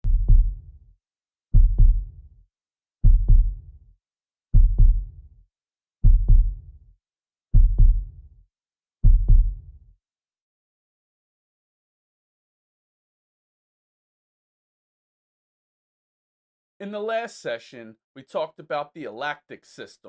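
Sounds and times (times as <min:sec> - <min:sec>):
slow heartbeat: 0:00.0 - 0:00.8, 0:01.5 - 0:02.3, 0:03.0 - 0:03.8, 0:04.5 - 0:05.3, 0:06.0 - 0:06.8, 0:07.5 - 0:08.3, 0:09.0 - 0:09.9.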